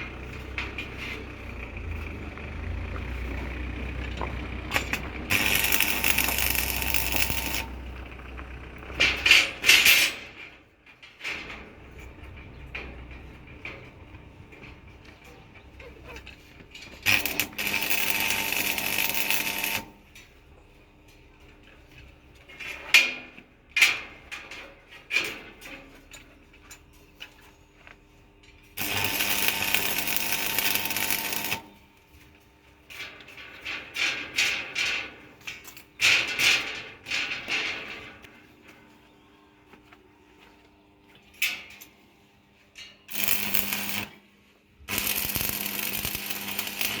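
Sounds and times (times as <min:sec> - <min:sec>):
small power tool running: 0:05.3 - 0:07.8, 0:17.0 - 0:20.0, 0:28.8 - 0:31.7, 0:43.1 - 0:44.2, 0:44.9 - 0:47.0.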